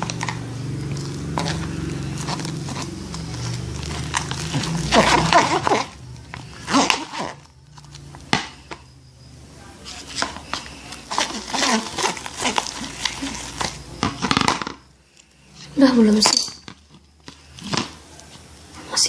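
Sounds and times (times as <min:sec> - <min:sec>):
slime squishing: 0:00.0 - 0:08.9, 0:09.8 - 0:15.3.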